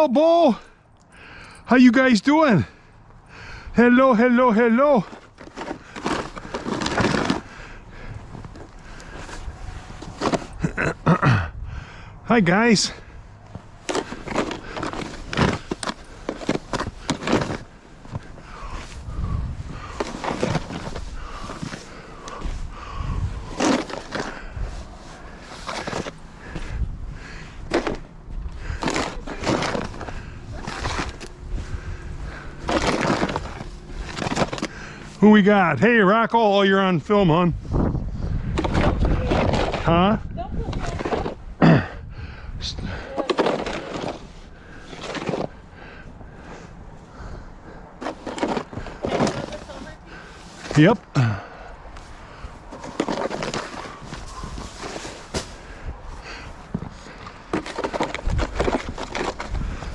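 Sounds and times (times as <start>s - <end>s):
snow crunching and scraping: 3.8s - 11.4s, 12.3s - 41.9s, 42.6s - 59.9s.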